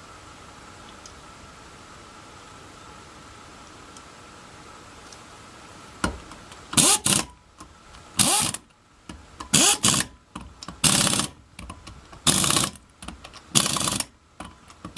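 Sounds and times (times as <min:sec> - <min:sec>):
impact wrench rattling bursts: 0:06.8 - 0:07.3, 0:08.2 - 0:08.6, 0:09.5 - 0:10.1, 0:10.8 - 0:11.4, 0:12.2 - 0:12.8, 0:13.5 - 0:14.1.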